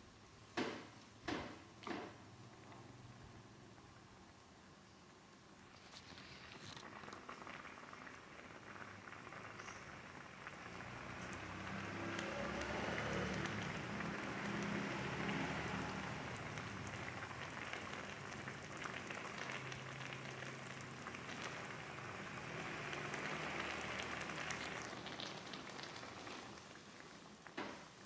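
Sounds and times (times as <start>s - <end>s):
chili paste sizzling in oil: 5.6s - 28.0s.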